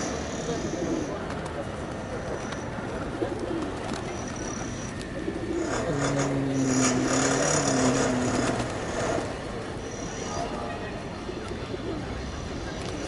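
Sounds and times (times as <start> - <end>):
pigeons cooing: 4.6 - 9.3.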